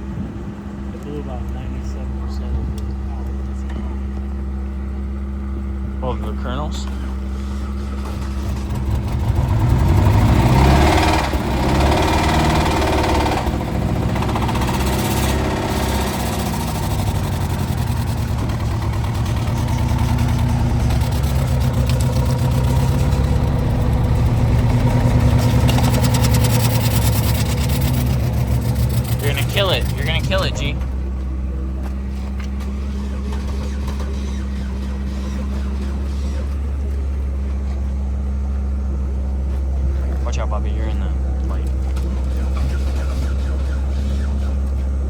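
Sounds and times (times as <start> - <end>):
car engine with rod knock: 6.8 - 37.9.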